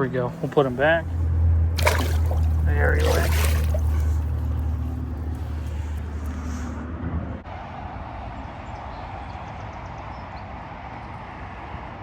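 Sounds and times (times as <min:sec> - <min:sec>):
flowing river water: 0:01.6 - 0:06.2.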